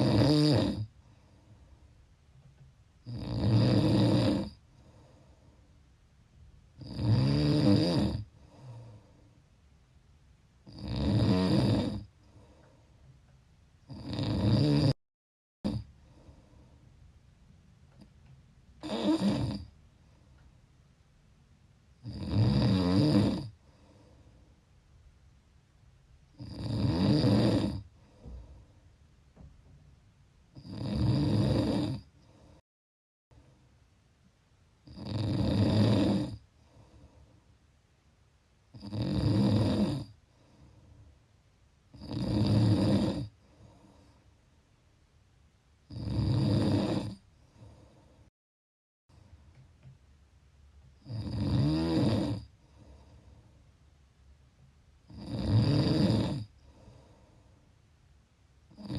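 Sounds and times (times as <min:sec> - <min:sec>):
person snoring: 0:00.0 - 0:00.9, 0:03.0 - 0:05.0, 0:06.8 - 0:09.0, 0:10.6 - 0:12.1, 0:13.9 - 0:15.0, 0:15.6 - 0:16.5, 0:18.8 - 0:19.7, 0:22.0 - 0:24.0, 0:26.4 - 0:27.9, 0:30.6 - 0:32.4, 0:34.8 - 0:37.1, 0:38.7 - 0:40.2, 0:41.9 - 0:44.2, 0:45.9 - 0:48.1, 0:51.0 - 0:53.2, 0:55.1 - 0:57.4
quiet breathing: 0:00.8 - 0:03.1, 0:04.4 - 0:06.8, 0:08.2 - 0:09.8, 0:12.0 - 0:13.9, 0:15.7 - 0:17.2, 0:17.9 - 0:20.7, 0:23.4 - 0:25.0, 0:27.8 - 0:29.6, 0:32.0 - 0:32.6, 0:36.2 - 0:37.8, 0:40.0 - 0:42.0, 0:43.2 - 0:44.7, 0:47.1 - 0:48.3, 0:52.3 - 0:54.0, 0:56.4 - 0:58.0.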